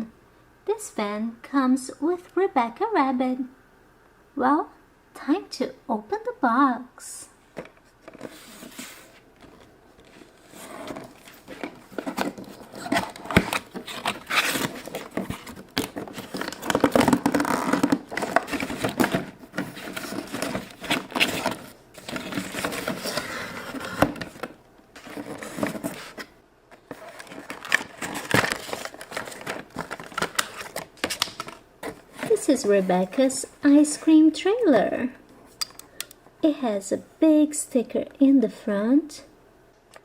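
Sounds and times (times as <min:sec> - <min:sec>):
cardboard box being opened: 0:08.2 - 0:26.3
plastic packaging crinkling: 0:09.4 - 0:32.8.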